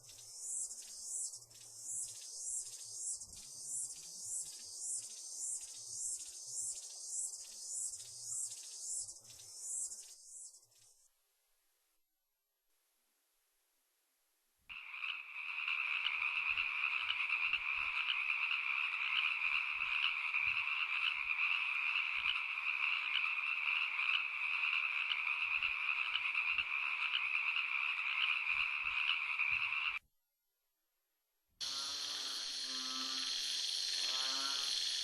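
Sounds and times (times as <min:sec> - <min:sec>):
chorus of frogs croaking: 0:14.7 - 0:30.0, 0:31.6 - 0:35.0.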